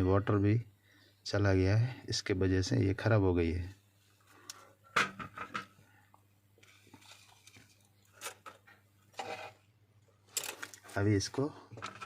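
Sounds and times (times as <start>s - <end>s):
small tools clicking and scraping: 10.3s - 11.0s.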